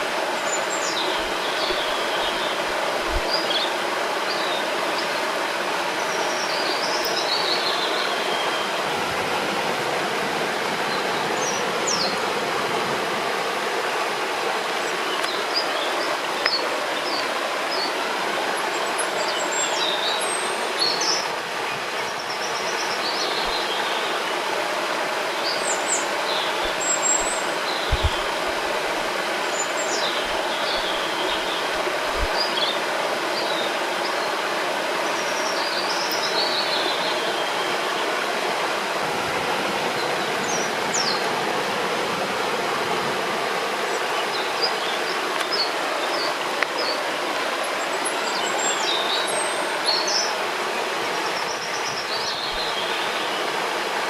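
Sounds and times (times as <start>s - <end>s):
rushing water: 0.0s - 54.0s
small birds chirping: 0.4s - 4.6s, 25.4s - 34.3s.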